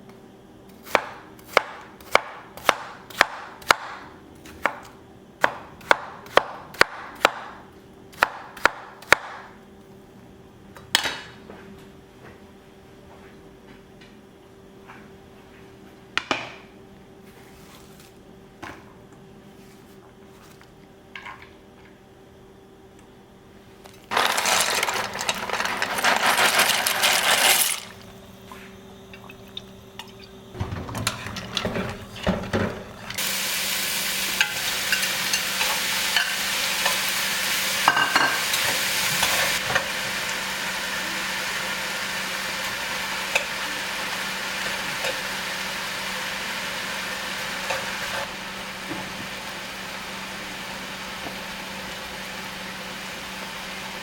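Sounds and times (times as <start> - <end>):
cookware clattering: 24.1 - 28.0
food sizzling in a pan: 33.2 - 54.0.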